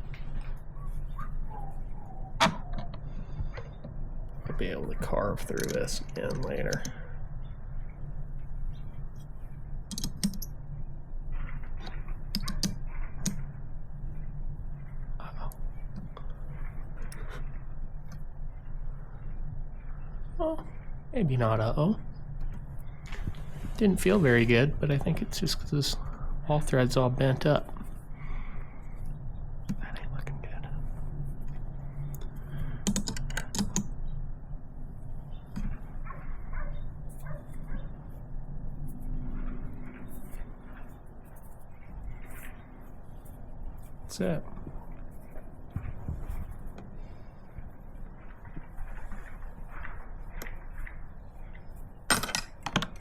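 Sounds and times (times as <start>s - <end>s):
steady low hum: 0.0s - 53.0s
metal hardware clicks and taps: 5.6s - 6.9s.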